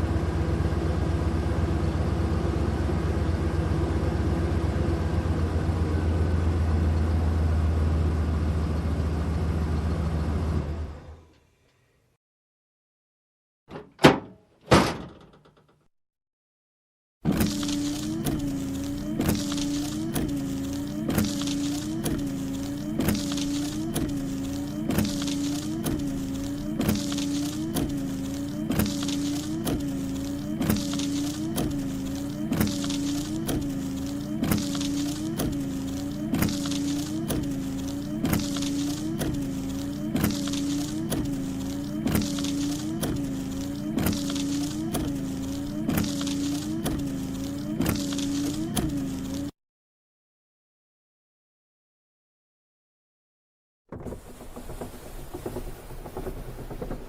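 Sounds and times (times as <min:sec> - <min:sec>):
small motor running: 0:17.3 - 0:49.5.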